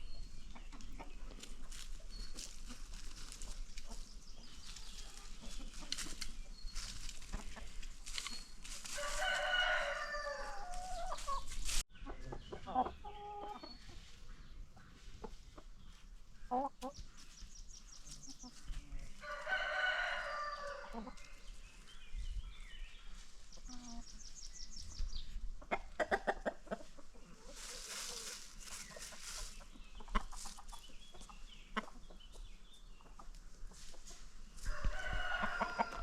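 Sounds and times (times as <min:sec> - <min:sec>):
chickens clucking: 0:00.0 - 0:36.0
rustling: 0:01.3 - 0:09.8, 0:10.7 - 0:11.9, 0:27.4 - 0:29.7
rooster crowing: 0:09.0 - 0:11.0, 0:19.2 - 0:20.9, 0:34.7 - 0:36.0.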